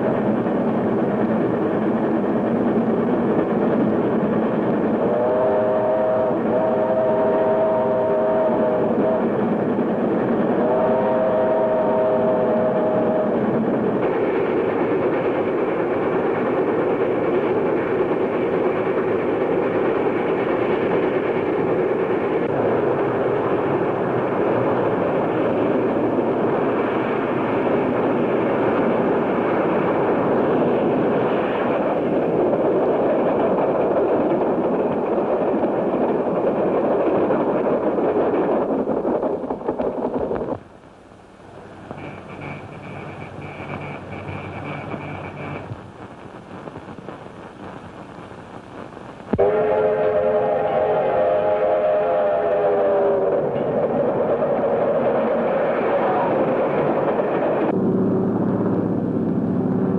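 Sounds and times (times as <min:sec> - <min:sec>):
steam train rumbling on rails: 0:00.0 - 0:46.2, 0:49.4 - 0:59.9
steam whistle blowing: 0:05.1 - 0:09.3, 0:10.6 - 0:13.4, 0:49.4 - 0:53.5.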